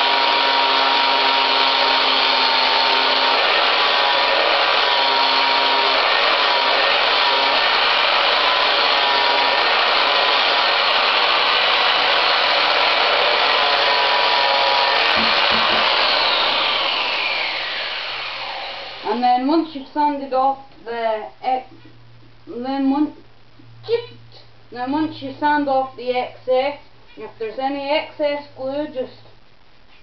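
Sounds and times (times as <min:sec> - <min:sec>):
grinder disc spinning down: 0:00.0 - 0:19.1
angle grinder sanding wood: 0:00.0 - 0:19.2.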